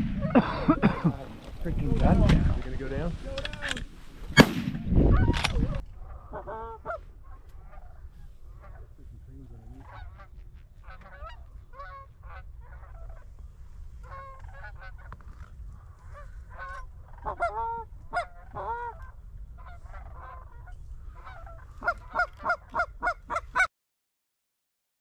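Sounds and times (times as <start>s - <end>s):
steady low rumble: 0.0s - 23.4s
geese honking: 5.1s - 23.7s.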